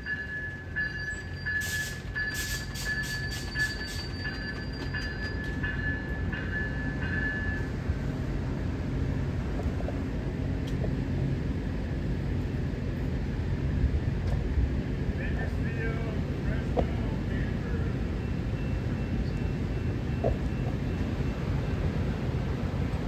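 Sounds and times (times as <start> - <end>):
crossing warning bell ringing: 0.0 - 7.8, 15.7 - 23.0
passenger train running past: 0.0 - 23.0.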